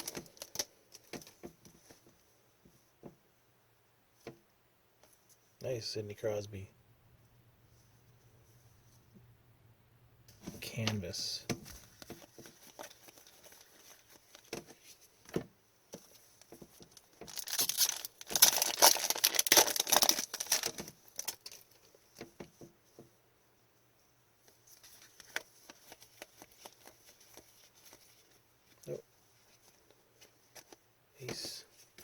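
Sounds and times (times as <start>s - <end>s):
foil wrapper tearing and crinkling: 0.0s - 0.7s, 12.0s - 14.5s, 16.9s - 21.8s, 24.9s - 28.2s.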